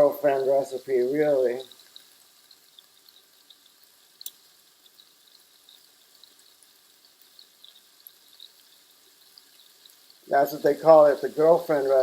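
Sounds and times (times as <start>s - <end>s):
beef sizzling in a pan: 0.0s - 12.0s
small pops: 1.6s - 10.3s.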